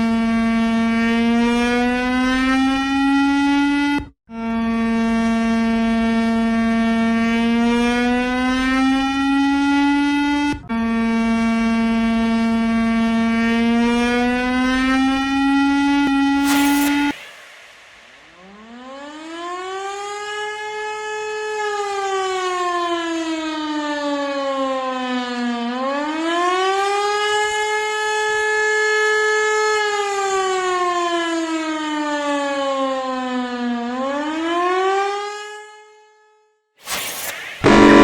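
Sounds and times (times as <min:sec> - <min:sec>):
air-raid siren wailing: 0:00.9 - 0:27.6, 0:36.9 - 0:38.0.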